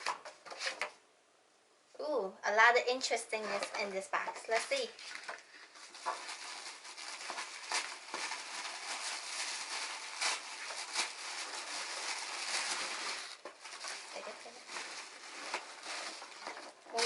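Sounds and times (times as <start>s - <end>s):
packaging rustling and crinkling: 3.4s - 17.0s.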